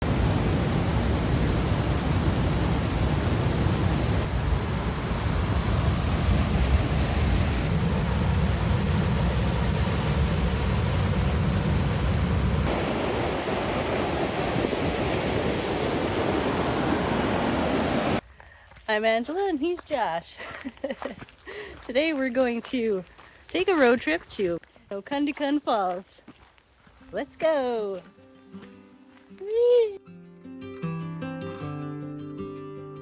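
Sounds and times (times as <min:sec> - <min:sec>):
river and waterfall rushing: 0:00.0 - 0:18.2.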